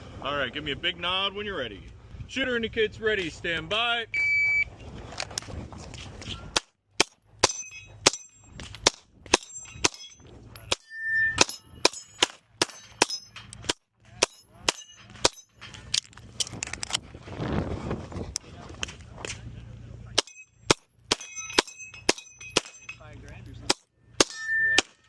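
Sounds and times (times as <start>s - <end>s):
shot timer beep: 4.1s - 4.7s
steel plates clanging: 7.4s - 8.7s, 9.3s - 15.9s, 20.2s - 23.2s, 24.2s - 25.0s.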